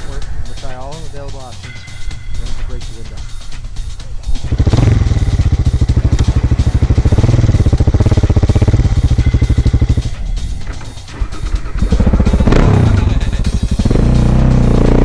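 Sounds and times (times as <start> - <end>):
motorcycle engine running: 3.1 - 15.0.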